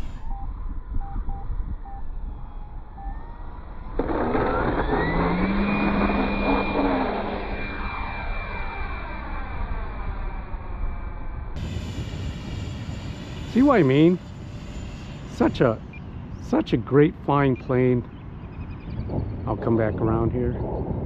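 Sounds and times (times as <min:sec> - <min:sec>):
wind rumble on microphone: 0:00.0 - 0:06.9, 0:11.4 - 0:21.0
model jet fan whine: 0:02.4 - 0:16.9.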